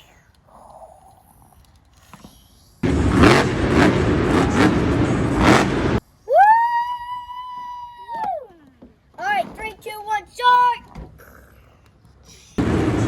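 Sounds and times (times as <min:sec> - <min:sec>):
monster truck engine revving: 0:02.8 - 0:06.0, 0:12.6 - 0:13.0.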